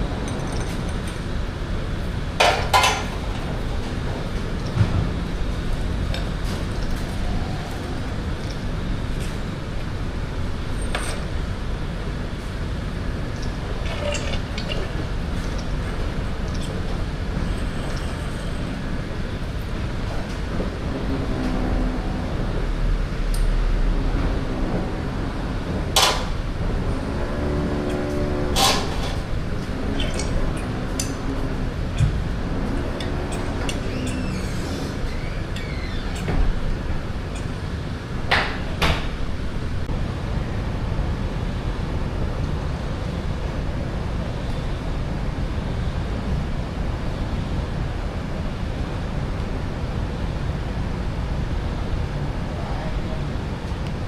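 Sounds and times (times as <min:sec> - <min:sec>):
workshop background noise: 0:00.0 - 0:40.4.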